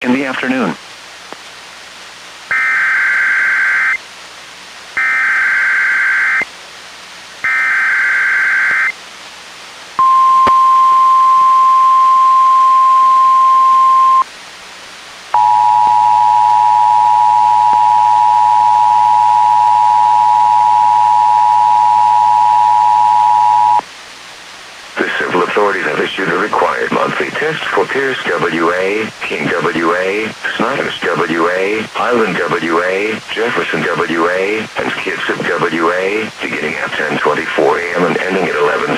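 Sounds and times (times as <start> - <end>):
single-tone warning alarm: 10.0 - 14.2, 15.4 - 23.8
two-tone attention signal: 10.0 - 14.2.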